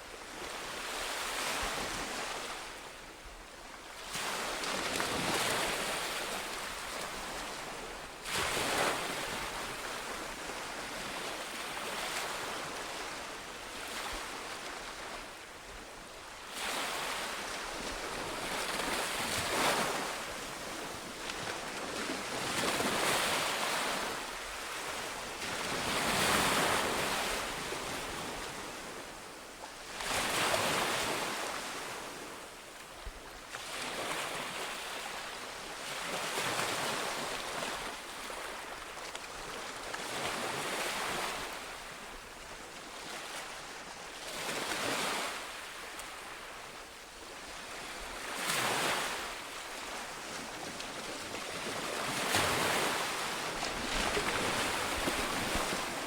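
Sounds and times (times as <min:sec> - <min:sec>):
sea waves breaking on shore: 0:16.4 - 0:29.1, 0:33.5 - 0:56.0.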